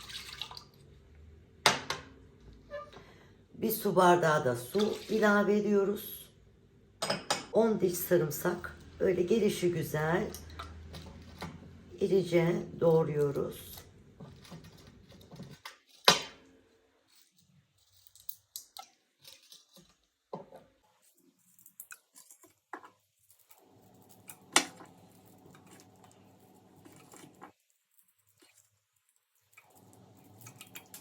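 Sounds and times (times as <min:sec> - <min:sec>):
knife cutting garlic: 0:24.1 - 0:27.6, 0:29.6 - 0:31.0.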